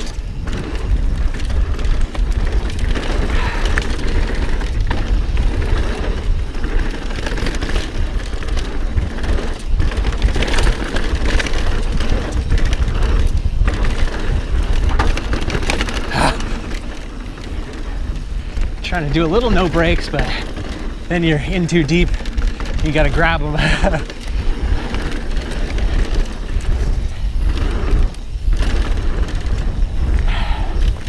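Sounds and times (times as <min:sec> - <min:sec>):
bike rattling and knocking: 0:00.0 - 0:31.0
tyres rolling over dirt and rock: 0:00.0 - 0:31.0
wind rumbling on microphone: 0:00.0 - 0:31.0.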